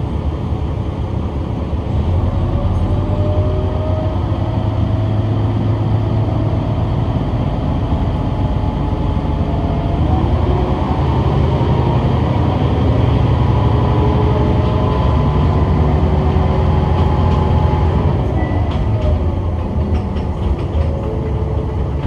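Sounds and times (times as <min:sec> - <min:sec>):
diesel railcar engine drone: 0:00.0 - 0:22.0
wheels clicking over rail joints: 0:13.0 - 0:22.0.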